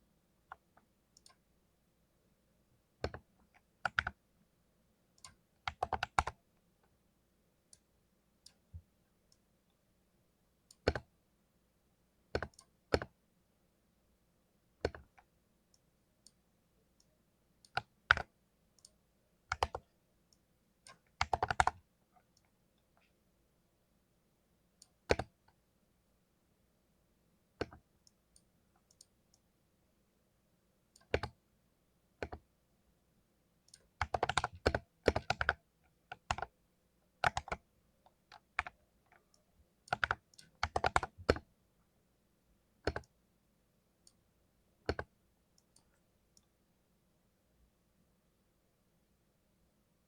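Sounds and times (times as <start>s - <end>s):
mechanical keyboard keys clacking: 39.9s - 41.4s.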